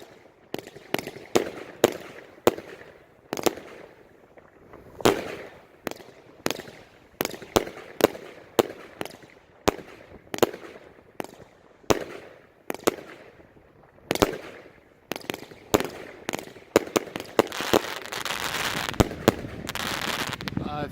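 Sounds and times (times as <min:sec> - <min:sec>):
firework barrage reports: 0:15.5 - 0:20.9.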